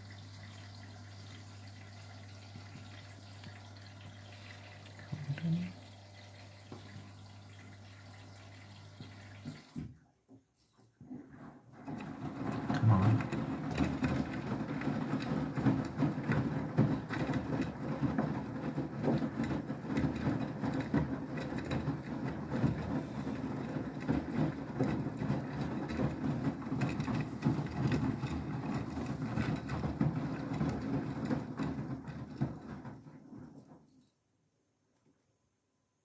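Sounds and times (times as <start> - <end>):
washing machine humming: 0.0 - 10.0, 11.3 - 33.8
washing machine clunks and knocks: 11.8 - 33.1.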